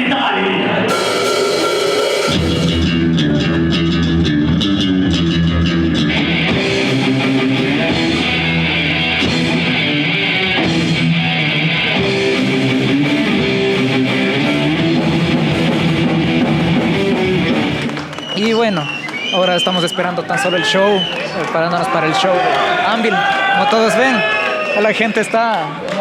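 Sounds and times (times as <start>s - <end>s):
rapid drum hits: 0.9s - 3.4s
distorted electric guitar and bass: 0.9s - 17.8s.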